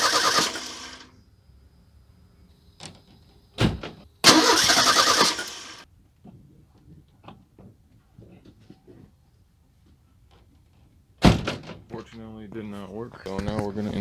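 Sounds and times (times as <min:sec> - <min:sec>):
car engine cranking: 0:00.0 - 0:01.1, 0:04.2 - 0:05.8
thump: 0:11.2 - 0:11.8.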